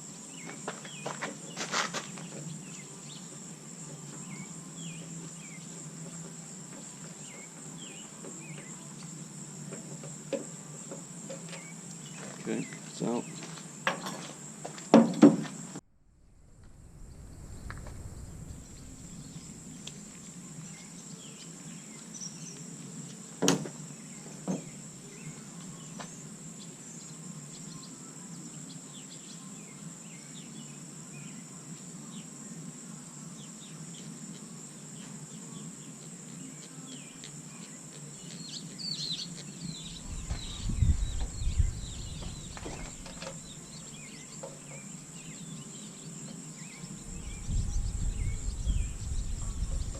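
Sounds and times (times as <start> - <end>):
high insect buzz: 0.0 - 49.9
low rumble: 15.8 - 20.4, 40.0 - 43.1, 47.0 - 49.9.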